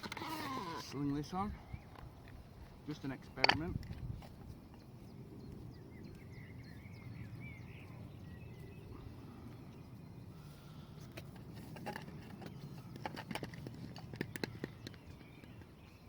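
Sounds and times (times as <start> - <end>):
magnet gear clicks and knocks: 1.9 - 4.2.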